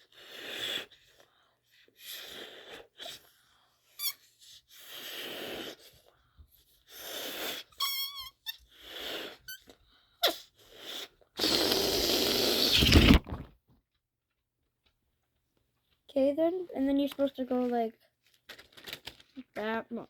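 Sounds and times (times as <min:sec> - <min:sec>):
rubber balloon squeaks: 0:04.0 - 0:04.3, 0:07.3 - 0:13.5
person blowing into balloon: 0:06.9 - 0:13.5.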